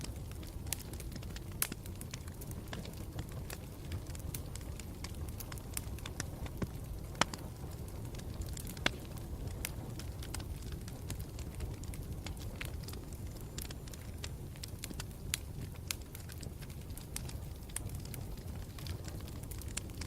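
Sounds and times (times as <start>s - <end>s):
campfire crackling and popping: 0.0s - 20.0s.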